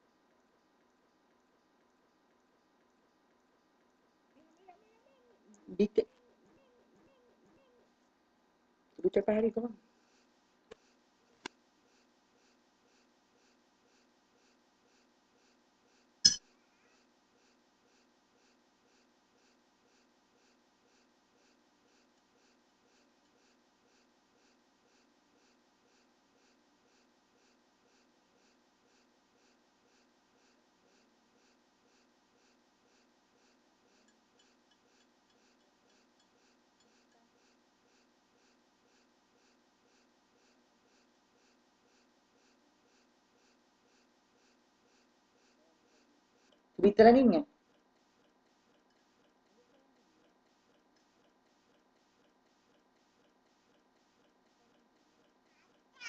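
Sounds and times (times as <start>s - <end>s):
faint rapid ticking: 0.0s - 7.8s, 29.9s - 46.8s, 47.5s - 56.0s.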